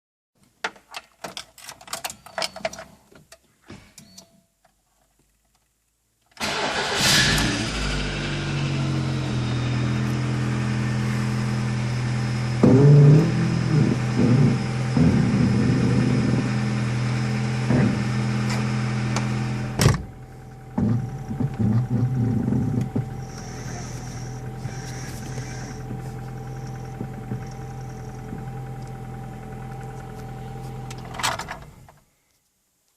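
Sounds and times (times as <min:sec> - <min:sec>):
car engine starting and idling: 0:06.4 - 0:32.0
steering creaks: 0:20.7 - 0:31.9
clicks: 0:22.8 - 0:29.0.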